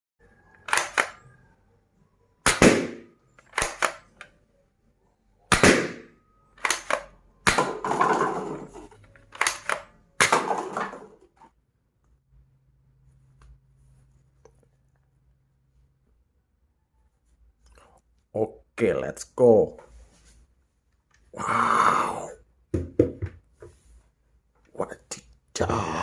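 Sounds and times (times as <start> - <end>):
toy guns firing: 0.6 - 1.2, 2.4 - 4.3, 5.5 - 8.4, 9.3 - 11.1.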